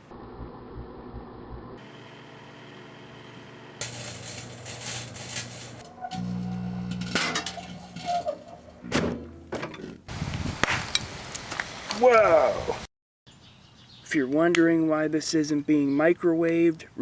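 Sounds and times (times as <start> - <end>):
microwave oven humming: 1.8 - 9.4.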